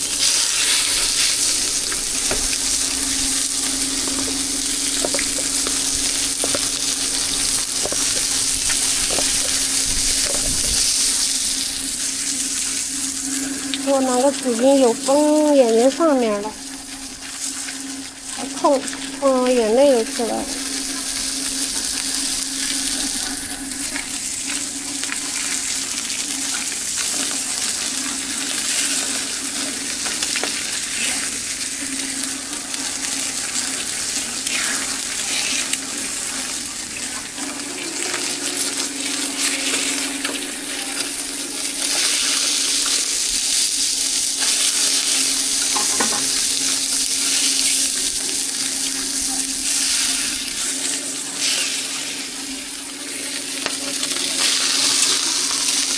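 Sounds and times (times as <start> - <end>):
low hum: 0.0 - 26.3
food sizzling in hot oil: 0.0 - 55.9.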